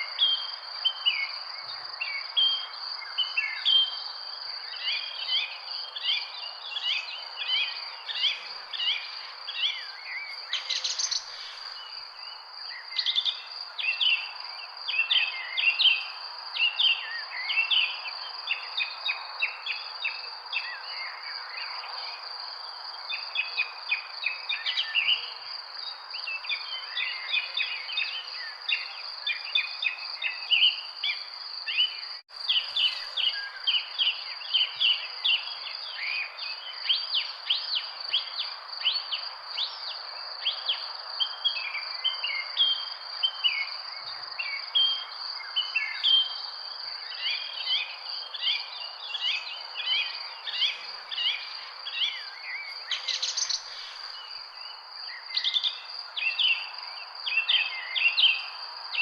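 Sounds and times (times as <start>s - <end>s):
background hiss: 0.0s - 23.2s, 43.0s - 59.0s
high insect drone: 0.0s - 59.0s
birds chirping and singing: 4.7s - 14.2s, 47.2s - 58.4s.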